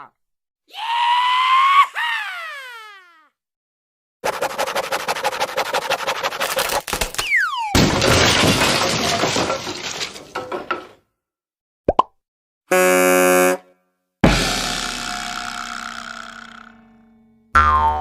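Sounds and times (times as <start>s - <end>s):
crash of shattering: 6.9s - 11.0s.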